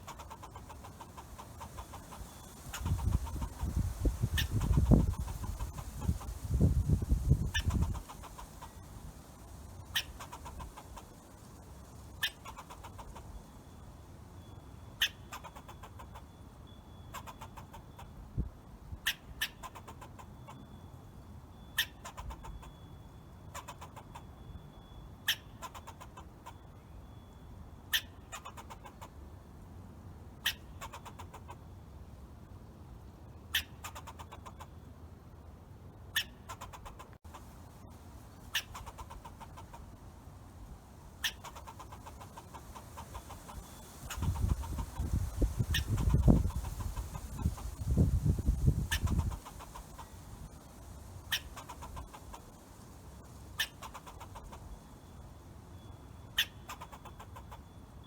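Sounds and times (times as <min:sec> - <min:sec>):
squirrel chirping: 0:00.0 - 0:13.4, 0:15.0 - 0:16.2, 0:17.1 - 0:18.2, 0:19.0 - 0:20.2, 0:21.7 - 0:22.8, 0:27.9 - 0:29.0, 0:36.2 - 0:40.0, 0:41.2 - 0:55.2, 0:55.8 - 0:57.8.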